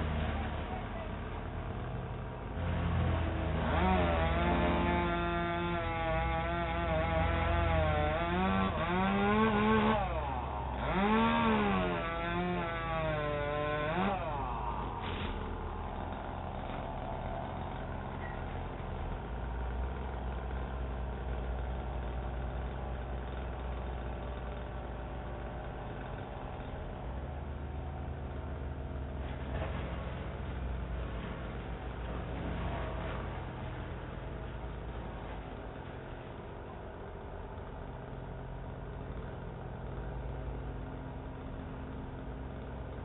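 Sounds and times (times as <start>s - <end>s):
low engine rumble: 0.0s - 43.0s
chainsaw revving: 2.6s - 27.1s.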